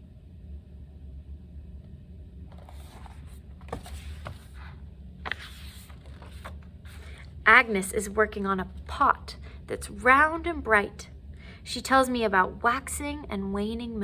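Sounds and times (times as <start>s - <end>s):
steady low hum: 0.0s - 14.0s
paper page rustling and turning: 2.5s - 7.3s.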